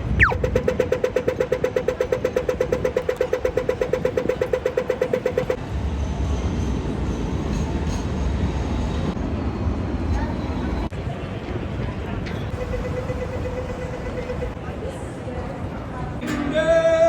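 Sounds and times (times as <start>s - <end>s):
low rumble of street traffic: 0.0s - 17.0s
crossing signal beeps ticking: 0.1s - 0.5s.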